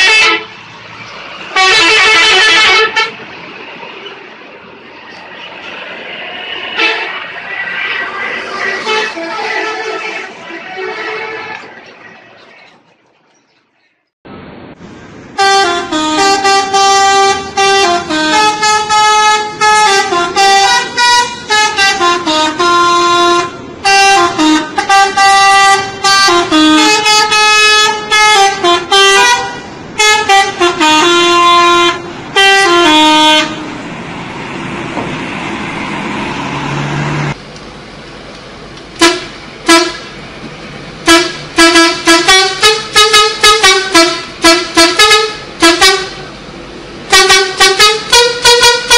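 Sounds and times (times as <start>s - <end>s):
bus air horn playing a tune: 0.0s - 0.6s, 1.5s - 3.2s, 6.8s - 7.2s, 8.8s - 11.7s, 15.4s - 33.8s, 39.0s - 40.1s, 41.0s - 46.4s, 47.1s - 48.9s
steady rushing noise: 2.9s - 13.0s
short horn toots: 39.0s - 40.1s.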